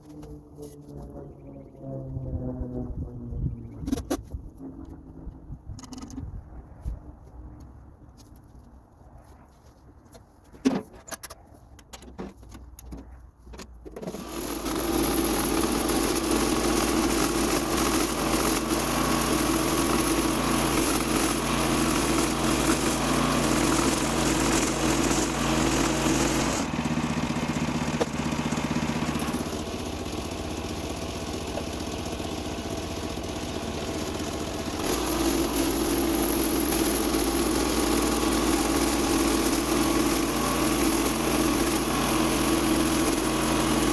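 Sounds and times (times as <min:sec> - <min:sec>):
sawmill gas engine running: 0:14.0 - 0:43.9.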